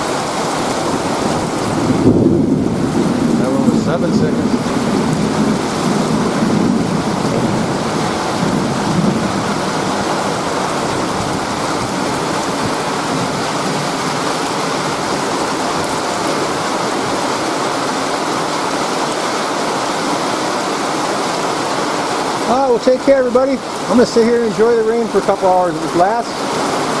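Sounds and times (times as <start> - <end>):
thunder rumbling: 0.0 - 17.8
steady rain falling: 0.0 - 27.0.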